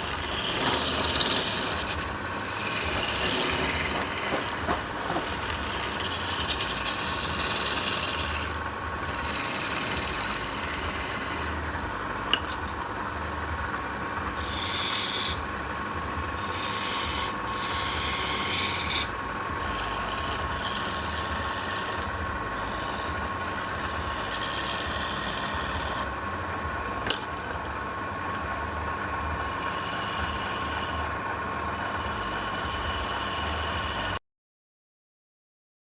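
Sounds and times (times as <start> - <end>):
abrasive scraping on wood: 0.0 - 12.8, 14.3 - 15.5, 16.1 - 26.1, 29.3 - 31.1, 31.7 - 34.2
constant hum: 0.0 - 34.2.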